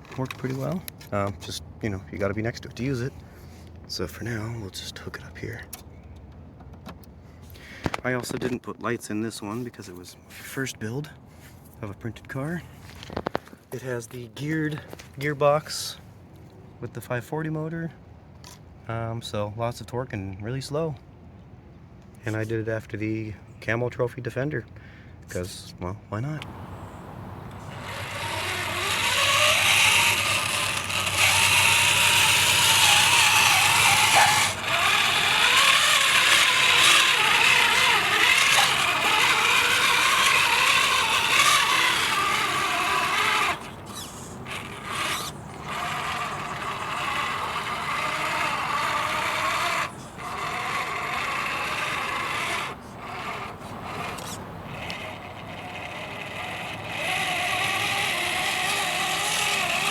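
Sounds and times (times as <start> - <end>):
toy car motor gear whine: 26.4 - 59.9.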